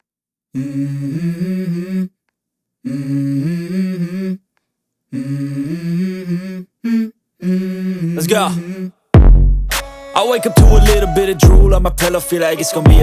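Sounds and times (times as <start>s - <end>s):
person humming a melody: 10.1s - 13.0s.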